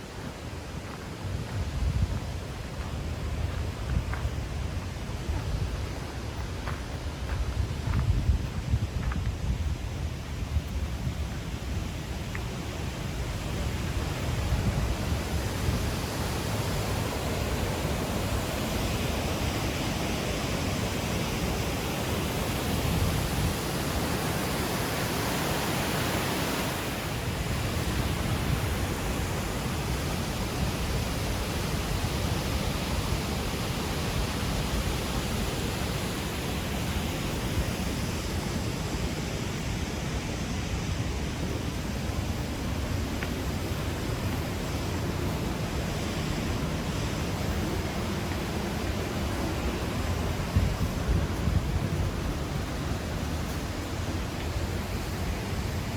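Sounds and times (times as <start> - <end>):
waterfall rushing: 12.9 - 55.9.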